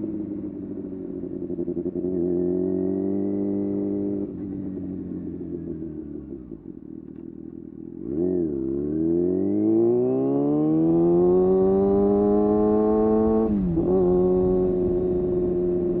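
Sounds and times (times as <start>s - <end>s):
motorcycle engine revving: 7.8s - 16.0s.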